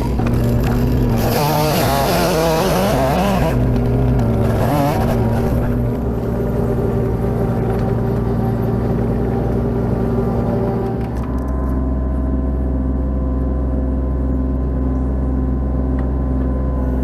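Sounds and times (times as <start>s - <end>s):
engine running steadily: 0.0s - 17.0s.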